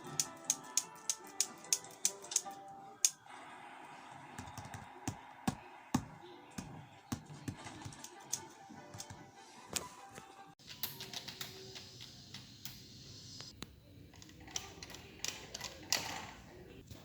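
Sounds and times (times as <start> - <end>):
quiet background music: 0.0 - 17.0
sharp clicks and taps: 10.6 - 16.4.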